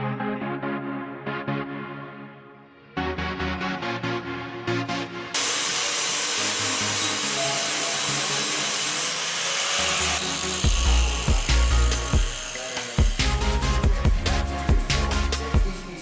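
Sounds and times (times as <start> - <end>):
loud steady hiss: 5.4 - 14.1
electronic background music: 9.8 - 16.0
heavy deep bass beats: 13.1 - 16.0.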